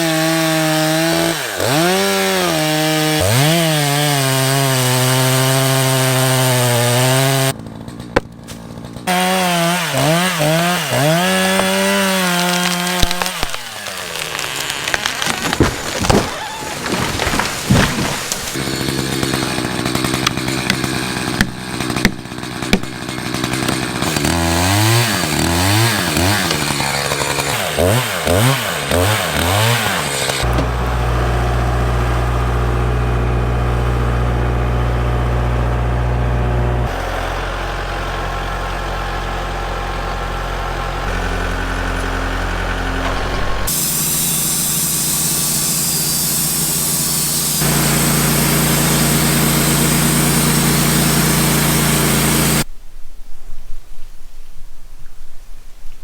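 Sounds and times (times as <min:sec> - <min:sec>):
chainsaw cutting and revving: 0:00.0 - 0:52.7
engine running at constant speed: 0:30.4 - 0:52.7.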